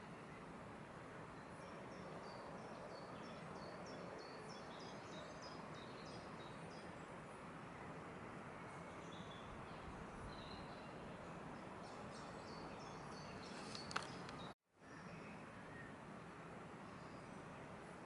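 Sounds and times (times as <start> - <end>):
songbird singing: 0.0 - 16.1, 16.8 - 18.0
faint outdoor hiss: 0.0 - 18.0.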